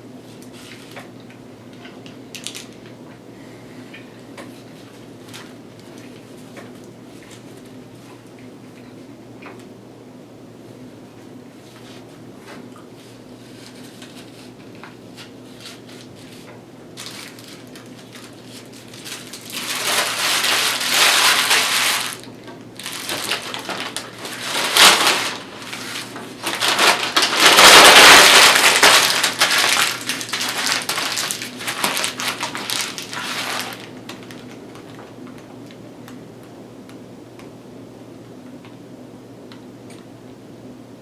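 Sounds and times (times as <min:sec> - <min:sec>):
wrapper crinkling and crunching: 0:02.3 - 0:02.9, 0:17.0 - 0:35.1.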